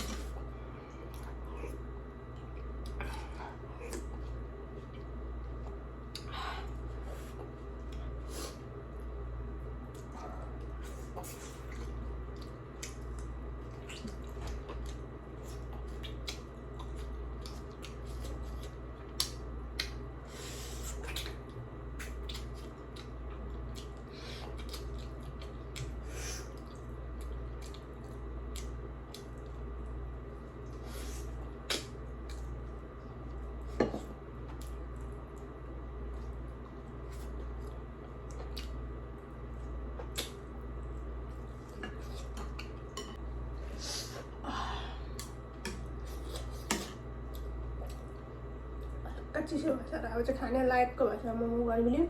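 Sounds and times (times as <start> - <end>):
steady low hum: 0.0 - 52.0
wet chewing and slurping: 9.8 - 29.7.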